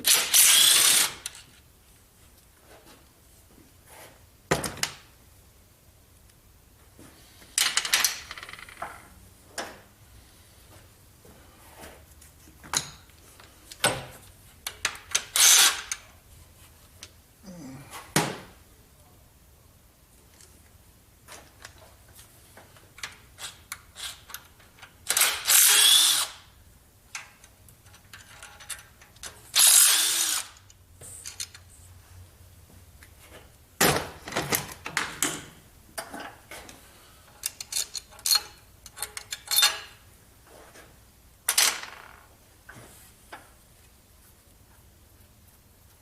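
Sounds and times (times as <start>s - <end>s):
power drill running: 25.5s - 26.3s, 29.6s - 30.5s
tools and metal parts clanking: 27.2s - 29.5s, 33.9s - 40.0s.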